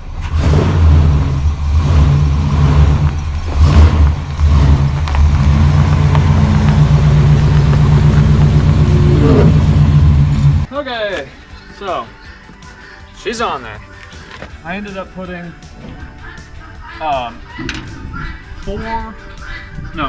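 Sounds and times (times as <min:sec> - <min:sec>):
truck engine idling: 0:00.0 - 0:10.7.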